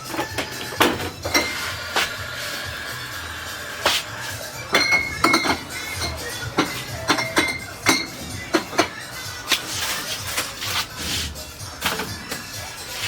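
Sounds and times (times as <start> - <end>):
background music: 0.0 - 13.0
glassware clinking: 0.1 - 1.8, 4.6 - 9.1.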